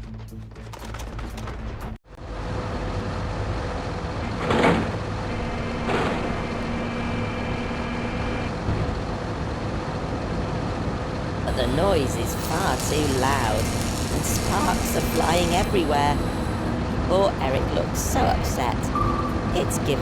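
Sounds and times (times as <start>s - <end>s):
saw grinding rock: 11.5s - 16.7s
rock saw whine: 11.5s - 16.8s
machine rumble: 11.5s - 17.1s.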